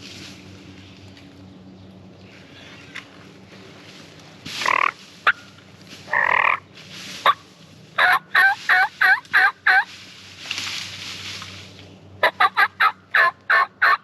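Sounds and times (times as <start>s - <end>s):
turkey yelping: 6.1s - 6.6s, 8.0s - 9.9s, 12.2s - 14.0s.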